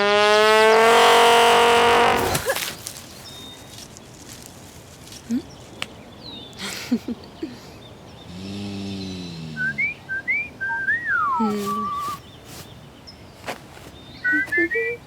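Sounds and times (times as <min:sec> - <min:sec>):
person whistling: 0:09.6 - 0:12.2, 0:14.2 - 0:15.0.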